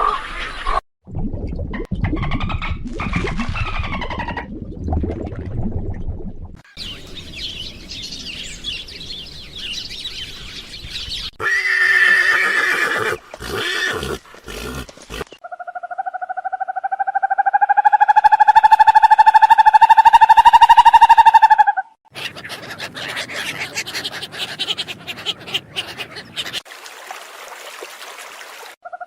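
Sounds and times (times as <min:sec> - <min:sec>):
quavering whinny-like animal call: 0:11.4 - 0:14.6.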